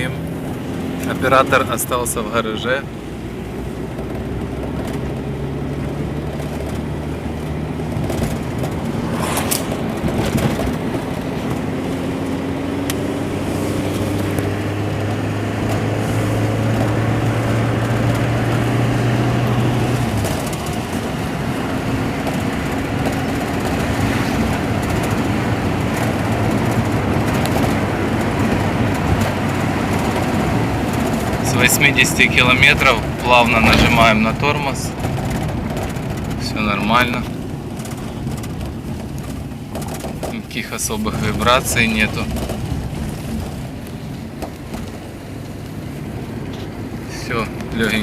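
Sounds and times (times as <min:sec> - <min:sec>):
car engine accelerating: 0:00.0 - 0:48.0
road noise inside car: 0:00.0 - 0:48.0.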